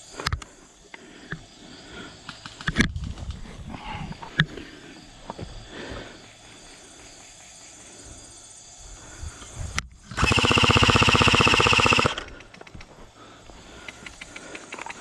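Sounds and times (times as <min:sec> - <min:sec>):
airsoft gun full-auto burst: 0:10.1 - 0:12.4.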